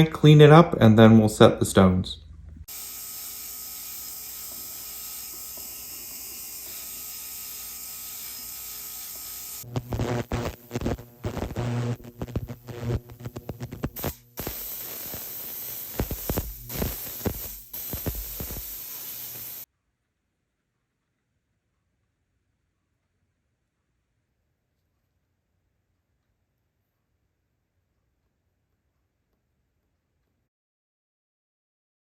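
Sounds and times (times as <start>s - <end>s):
polishing machine hissing: 2.7s - 19.7s.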